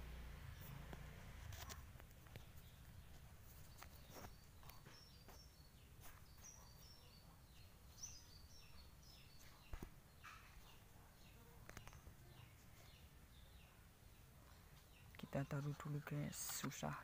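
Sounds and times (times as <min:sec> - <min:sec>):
small bird chirping: 0:00.4 - 0:17.0.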